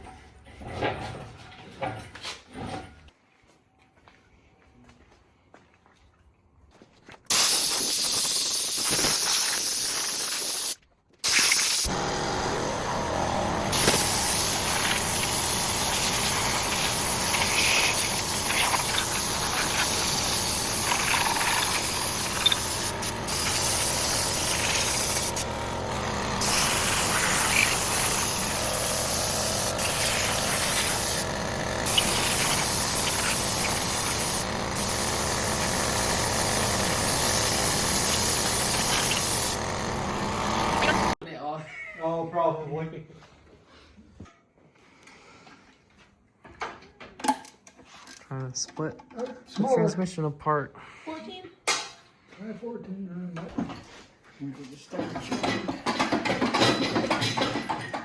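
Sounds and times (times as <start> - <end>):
loud steady hissing: 7.3 - 41.2.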